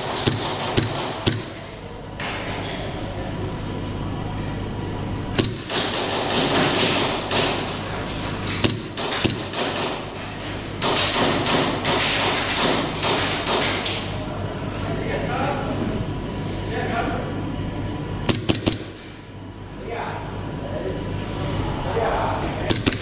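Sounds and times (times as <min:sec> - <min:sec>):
sharp knocks: 0:00.0 - 0:01.6, 0:05.4 - 0:10.0.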